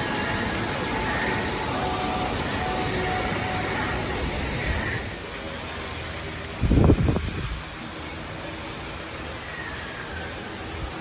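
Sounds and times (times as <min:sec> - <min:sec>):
heavy rain pouring: 0:00.0 - 0:11.0.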